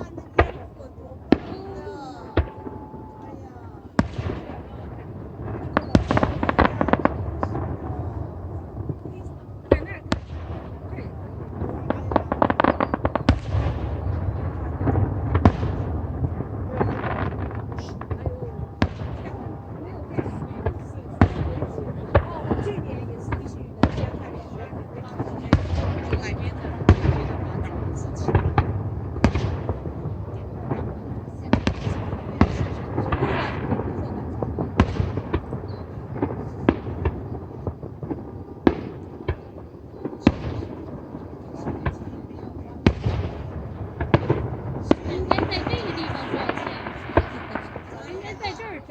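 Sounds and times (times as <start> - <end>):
fireworks booms: 0.0 - 48.9
fireworks crackling pops: 0.0 - 48.9
rumble of explosions: 0.0 - 48.9.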